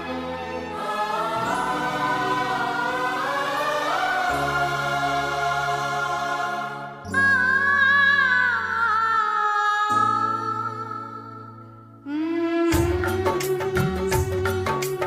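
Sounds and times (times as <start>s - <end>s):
busier song: 0.0s - 8.5s
slow choral music: 0.0s - 15.0s.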